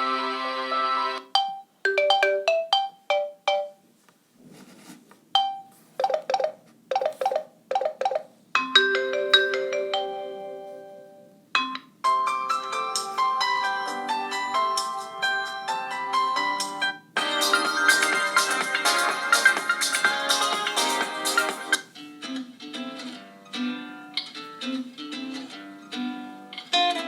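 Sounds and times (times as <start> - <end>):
electronic mallet ringtone melodies: 1.3 - 3.8, 8.6 - 21.8.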